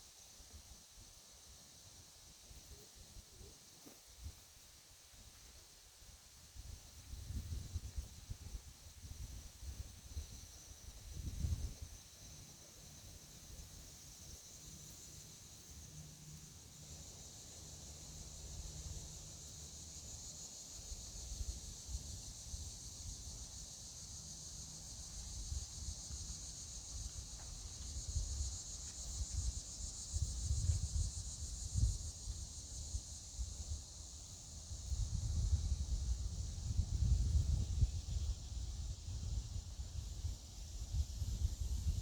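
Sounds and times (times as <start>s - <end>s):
high-pitched insect chorus: 0.0s - 42.0s.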